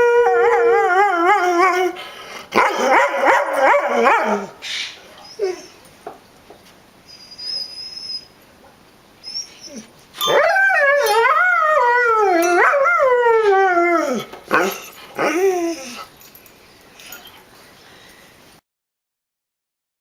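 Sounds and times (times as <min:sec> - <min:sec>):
dog howling: 0:00.0 - 0:02.0, 0:02.6 - 0:04.6, 0:09.5 - 0:16.1
dog whining: 0:02.6 - 0:05.8, 0:07.0 - 0:08.4, 0:09.2 - 0:16.2.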